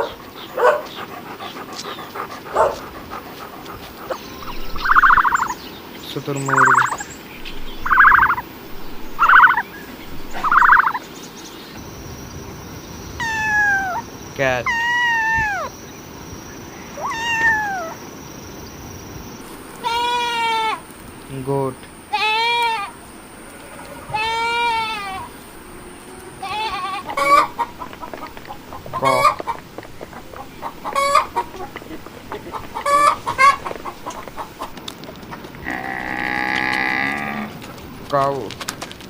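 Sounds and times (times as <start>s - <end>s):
chickens clucking: 0.0s - 11.8s, 19.5s - 38.8s
loud pitched chicken calls: 4.1s - 5.6s, 6.4s - 11.0s, 13.2s - 15.7s, 16.8s - 18.0s, 22.1s - 34.8s
cat meowing: 13.2s - 14.0s, 14.6s - 15.7s, 17.0s - 18.0s, 23.8s - 25.3s.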